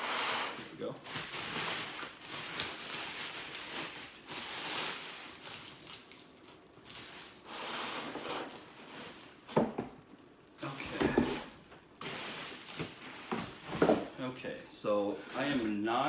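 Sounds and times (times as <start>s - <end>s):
bubble wrap crinkling: 0.6s - 9.4s, 11.4s - 13.8s.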